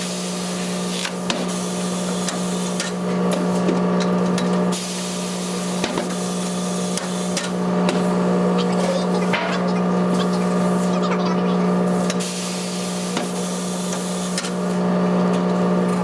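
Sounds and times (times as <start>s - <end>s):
machinery humming: 7.5s - 13.0s.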